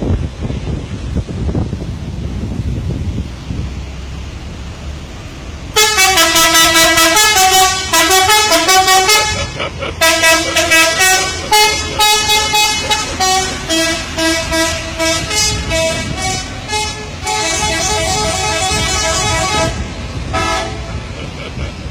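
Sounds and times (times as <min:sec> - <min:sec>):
bus musical air horn: 0:05.7 - 0:21.1.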